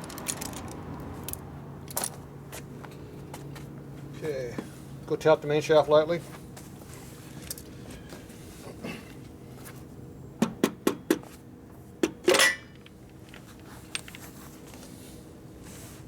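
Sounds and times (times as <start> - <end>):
metallic clank: 12.2 - 12.9.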